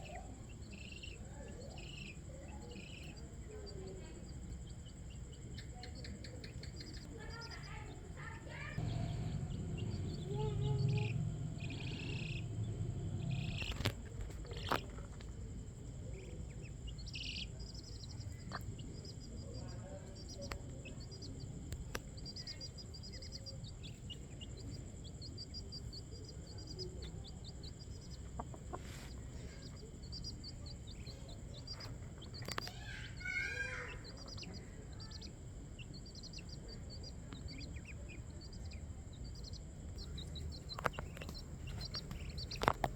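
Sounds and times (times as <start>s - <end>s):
chick peeping: 0.0s - 42.9s
high insect drone: 0.0s - 42.9s
hen clucking: 22.6s - 35.3s, 35.9s - 42.9s.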